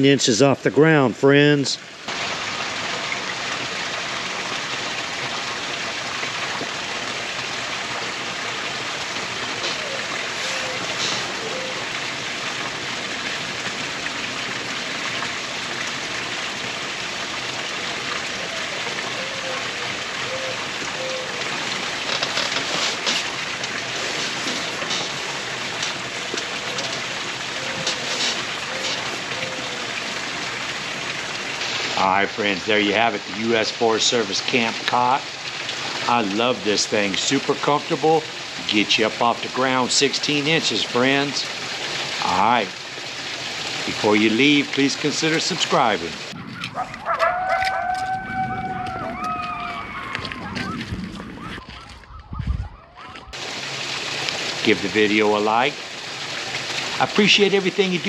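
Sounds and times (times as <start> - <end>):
rushing hiss: 9.5 - 11.8, 27.6 - 29.6, 31.5 - 32.1.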